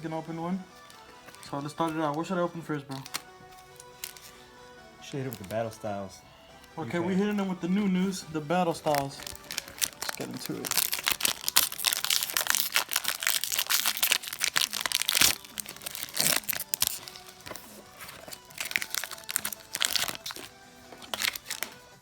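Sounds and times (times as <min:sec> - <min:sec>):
background music: 0:00.0 - 0:22.0
foil wrapper crinkling and tearing: 0:02.9 - 0:04.4, 0:08.8 - 0:22.0.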